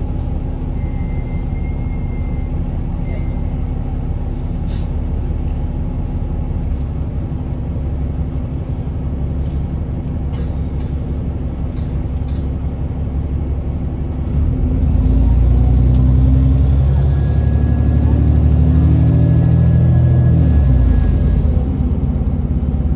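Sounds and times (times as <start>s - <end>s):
bus diesel engine: 0.0s - 22.9s.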